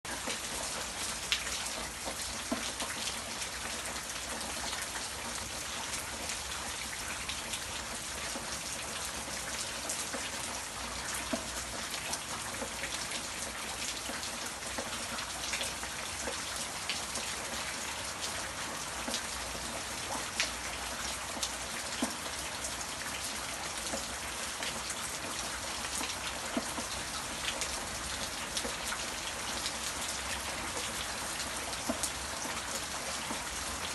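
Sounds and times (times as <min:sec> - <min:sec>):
steady rain falling: 0:00.1 - 0:33.9.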